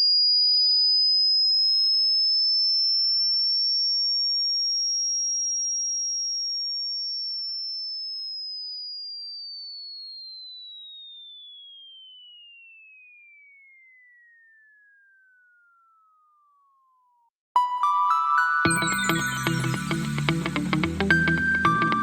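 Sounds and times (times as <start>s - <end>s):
high-pitched electronic tone: 17.6s - 22.0s.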